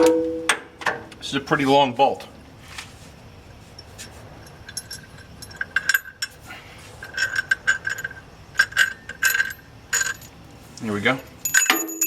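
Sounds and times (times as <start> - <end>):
metal tools clinking: 3.8 - 10.4, 11.0 - 12.0.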